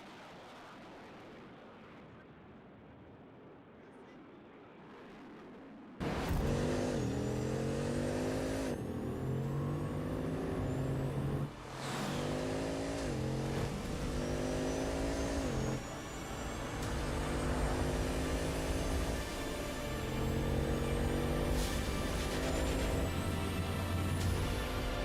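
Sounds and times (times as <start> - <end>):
car engine accelerating hard: 6.0 - 25.0.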